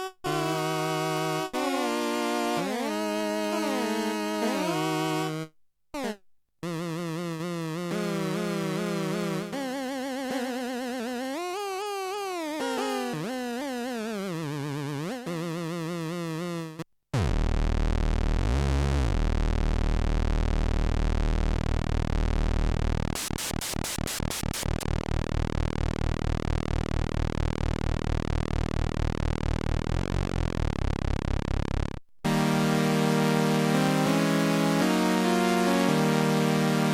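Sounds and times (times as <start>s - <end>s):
bass-heavy synthesizer buzzing: 17.2s - 36.9s
synthesizer tone with wide vibrato: 21.2s - 36.9s.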